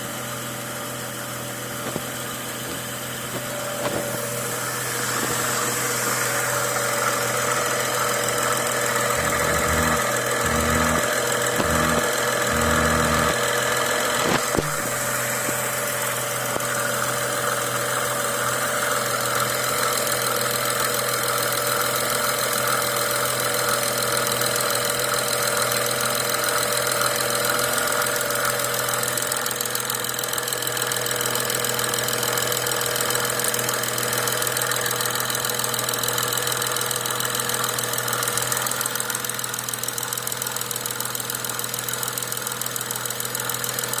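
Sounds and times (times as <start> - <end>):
car engine idling: 1.5 - 17.9
repeating resonating engine noise: 9.1 - 13.4.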